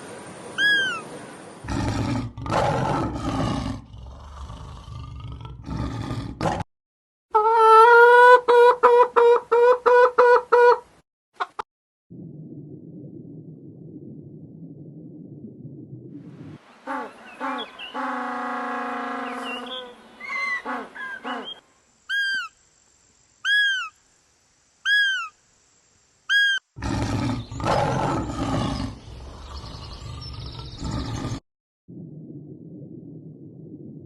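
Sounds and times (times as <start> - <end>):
rough roar-like animal call: 1.6 - 6.6, 26.8 - 31.4
long drawn-out animal call: 16.8 - 22.5.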